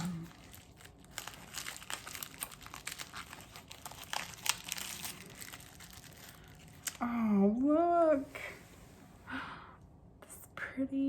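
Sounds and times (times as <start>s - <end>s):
packaging crinkling: 0.0s - 7.0s.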